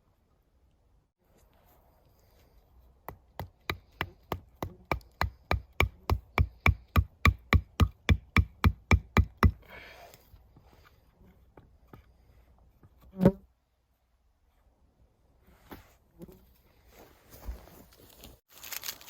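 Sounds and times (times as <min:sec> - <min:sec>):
hammering: 0:03.1 - 0:09.6
short rustle: 0:16.6 - 0:19.0.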